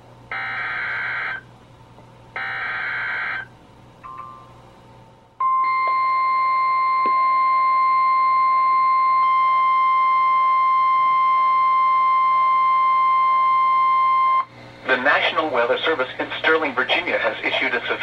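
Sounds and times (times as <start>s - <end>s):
steady warning alarm tone: 0.3s - 1.5s, 2.4s - 4.6s, 5.4s - 14.5s.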